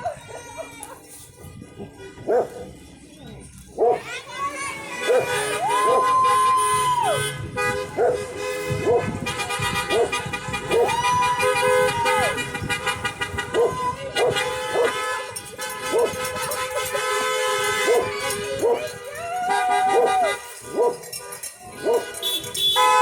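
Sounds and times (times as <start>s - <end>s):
dog barking: 2.3s - 2.7s, 3.8s - 4.0s, 8.0s - 9.2s, 9.9s - 10.2s, 13.6s - 15.0s, 15.9s - 16.2s, 17.8s - 18.9s, 19.9s - 21.1s, 21.8s - 22.2s
car horns honking: 4.6s - 23.0s.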